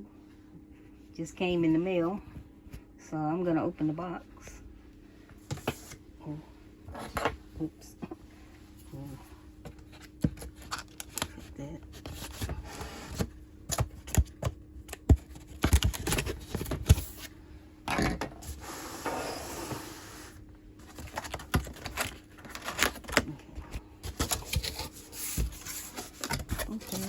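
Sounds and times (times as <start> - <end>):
packaging knocks clicks and scrapes: 12.0 - 17.2, 20.8 - 23.3, 24.0 - 27.0.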